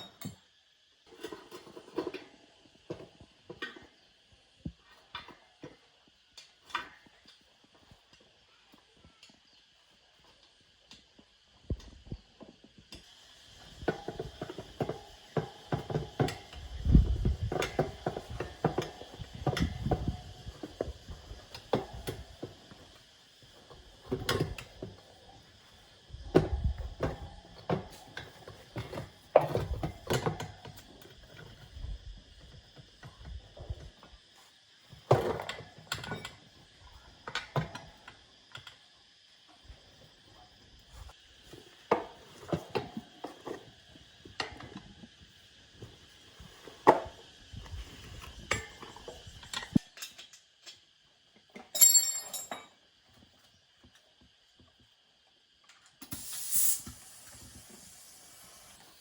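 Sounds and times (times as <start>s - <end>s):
metallic tool clanks: 51.8s - 52.7s.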